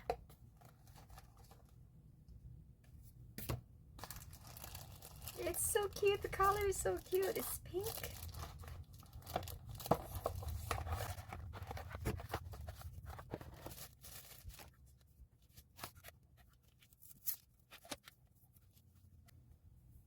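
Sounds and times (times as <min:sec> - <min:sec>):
packaging rustling and tearing: 0:04.0 - 0:15.0.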